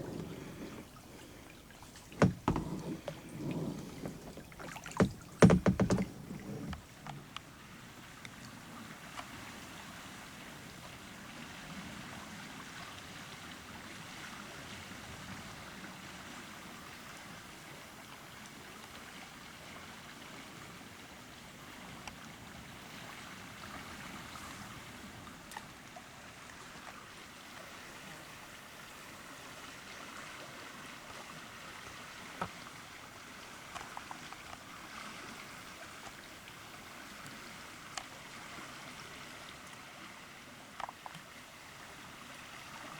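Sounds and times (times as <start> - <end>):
water lapping around a kayak: 0.0 - 42.9.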